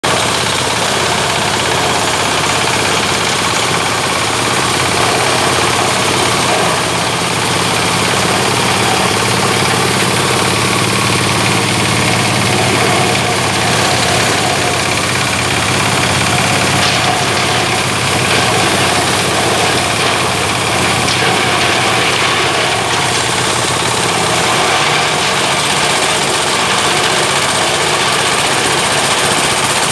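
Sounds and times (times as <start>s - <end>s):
shredder engine running: 0.0s - 29.9s.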